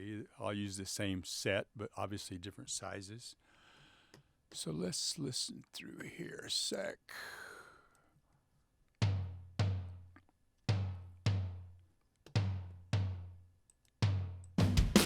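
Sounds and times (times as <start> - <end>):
tom-tom drum strikes: 9.0 - 9.9, 14.0 - 15.0
fast run of drum hits: 14.6 - 15.0.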